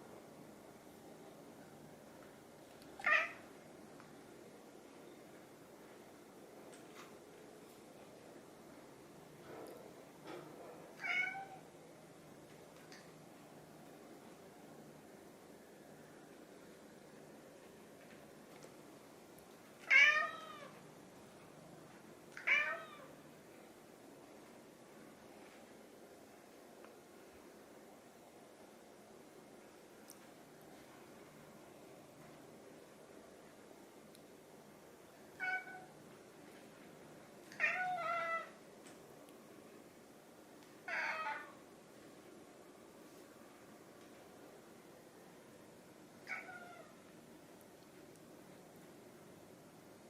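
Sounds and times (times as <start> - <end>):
cat meowing: 3.0 - 3.4, 11.0 - 11.6, 19.8 - 20.8, 22.4 - 23.2, 35.4 - 35.9, 37.6 - 38.6, 40.8 - 41.6, 46.2 - 47.0.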